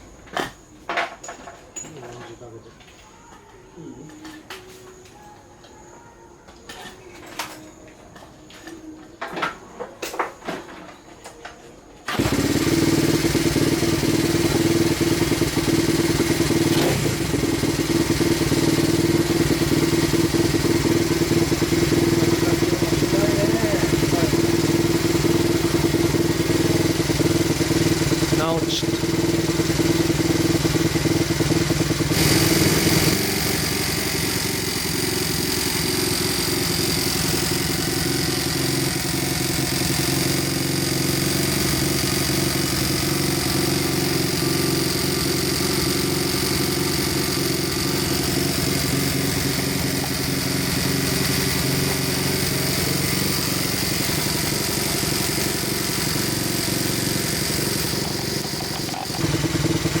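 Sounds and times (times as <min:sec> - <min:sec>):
small motorcycle engine running: 0:12.1 - 1:00.0.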